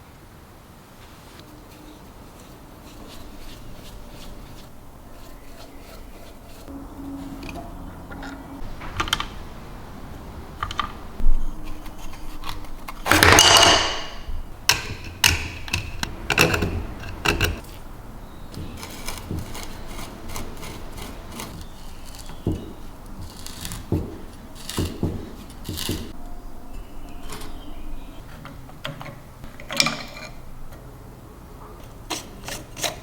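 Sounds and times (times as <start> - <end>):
scraping rattle: 11.7 - 26.2.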